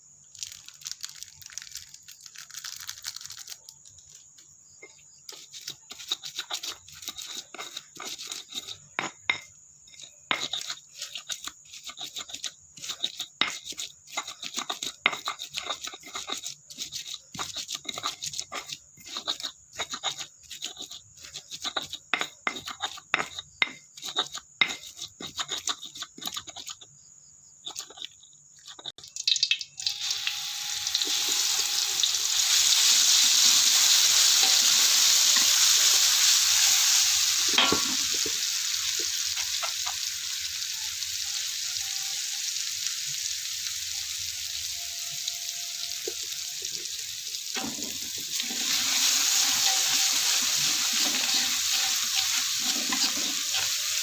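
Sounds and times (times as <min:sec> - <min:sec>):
frying sizzle: 0:00.0 - 0:03.7, 0:28.6 - 0:54.0
utensils clicking and scraping: 0:05.3 - 0:09.4, 0:10.0 - 0:26.9, 0:27.6 - 0:29.9, 0:33.4 - 0:36.0, 0:49.4 - 0:54.0.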